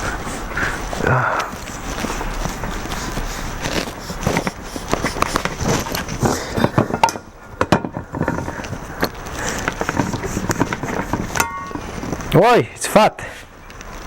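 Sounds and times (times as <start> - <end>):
knife scraping ham: 1.5 - 6.8.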